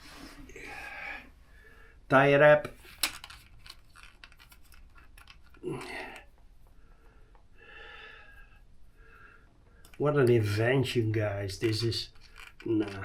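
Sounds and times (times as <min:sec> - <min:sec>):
cable tie clicking and scratching: 0:02.8 - 0:07.4, 0:09.8 - 0:13.0.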